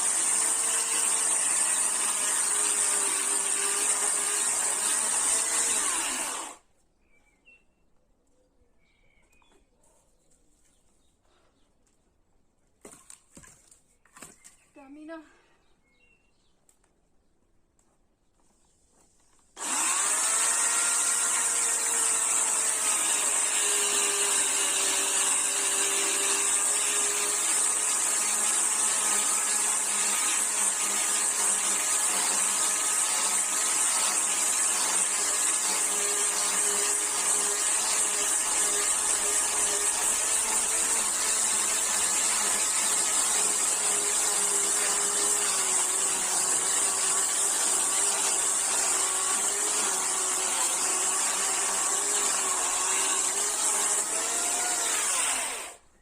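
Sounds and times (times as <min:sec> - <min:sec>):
chainsaw running: 0:00.0 - 0:06.6, 0:19.6 - 0:55.8.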